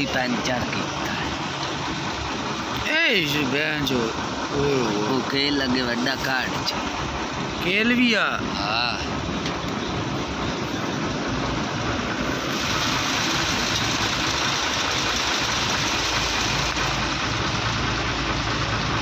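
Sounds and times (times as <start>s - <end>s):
vehicle engine running: 0.0s - 19.0s.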